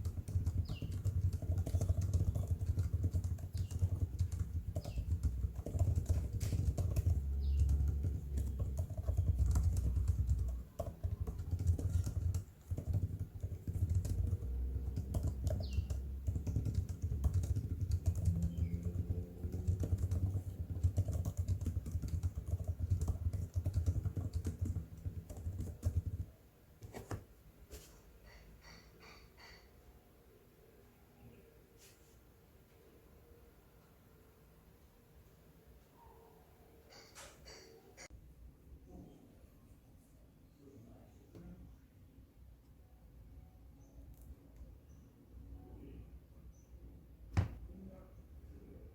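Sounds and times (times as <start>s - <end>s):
fast keyboard typing: 0.0s - 27.2s.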